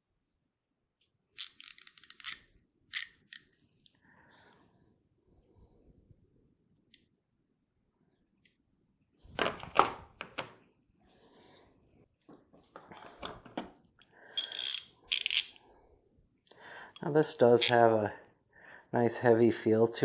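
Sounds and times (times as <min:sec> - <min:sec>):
ratchet clicking: 0:01.4 - 0:03.6
metal tools clicking and knocking: 0:01.4 - 0:03.8, 0:14.4 - 0:15.6, 0:17.6 - 0:17.9.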